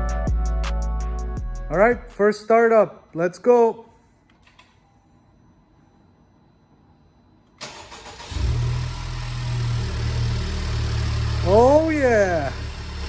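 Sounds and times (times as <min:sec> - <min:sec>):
starter motor cranking: 0:07.6 - 0:10.0
car engine idling: 0:07.6 - 0:13.0.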